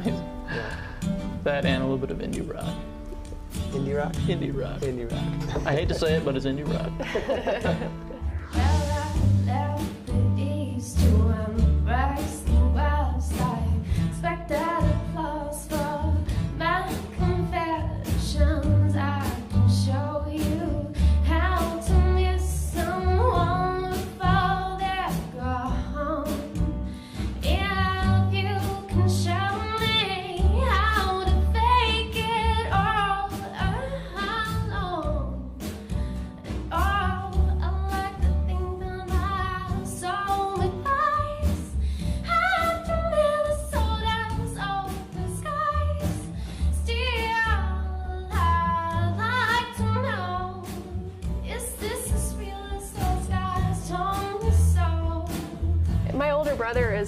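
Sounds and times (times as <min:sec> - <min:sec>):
drum beat: 0:00.0 - 0:09.6, 0:55.3 - 0:57.0
bass line: 0:00.0 - 0:57.0
woman singing: 0:08.2 - 0:57.0.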